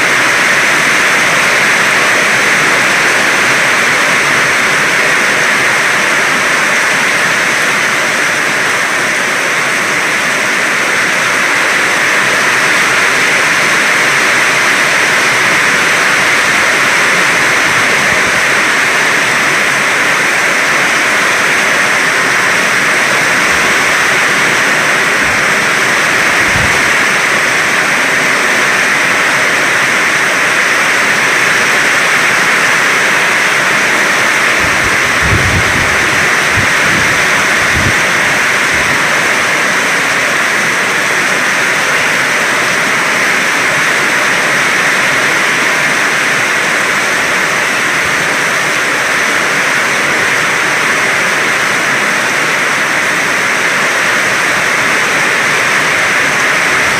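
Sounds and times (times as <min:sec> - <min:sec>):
heavy rain pouring: 0:00.0 - 0:56.9.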